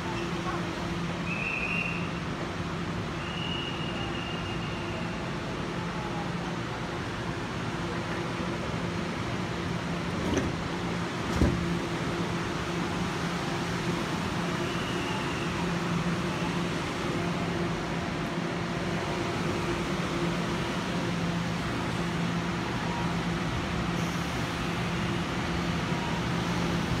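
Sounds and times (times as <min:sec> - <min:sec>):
electric train hum: 0:00.0 - 0:27.0.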